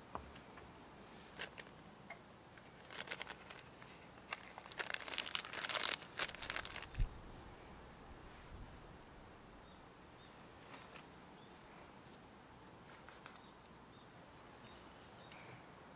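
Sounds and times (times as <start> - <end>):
crinkling and rustling handling: 0.1 - 1.9, 2.5 - 7.5, 10.6 - 11.2, 12.0 - 13.7.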